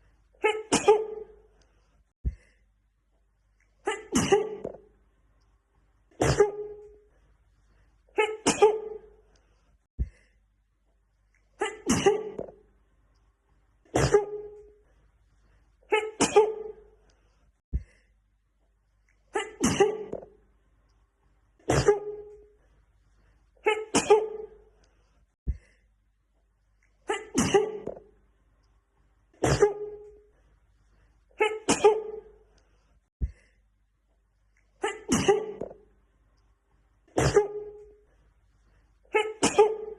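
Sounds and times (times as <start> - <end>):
woman sneezing: 0.4 - 1.4, 3.8 - 4.8, 6.2 - 6.9, 8.2 - 9.1, 11.6 - 12.5, 13.9 - 14.6, 15.9 - 16.8, 19.3 - 20.2, 21.7 - 22.3, 23.6 - 24.6, 27.1 - 28.0, 29.4 - 30.0, 31.4 - 32.3, 34.8 - 35.7, 37.1 - 37.8, 39.1 - 39.9.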